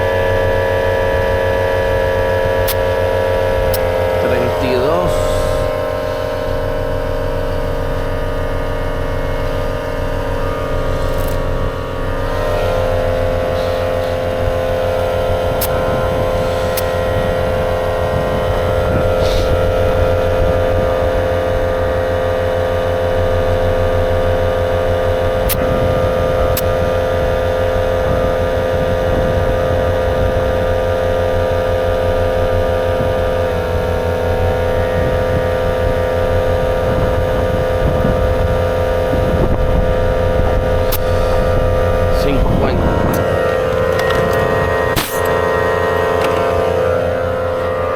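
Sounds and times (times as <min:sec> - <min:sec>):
air compressor running: 0:00.0 - 0:47.9.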